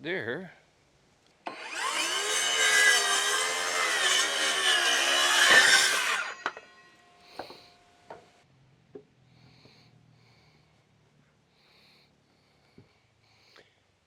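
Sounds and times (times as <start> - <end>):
power saw cutting wood: 1.5 - 7.7.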